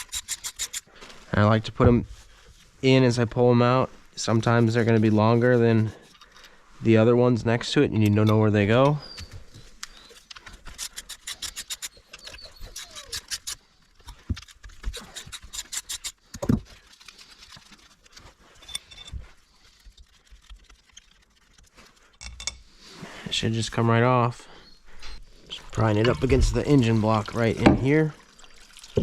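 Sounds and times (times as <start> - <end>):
metal parts scraping: 0.0 - 1.1, 5.8 - 6.6, 9.8 - 22.7.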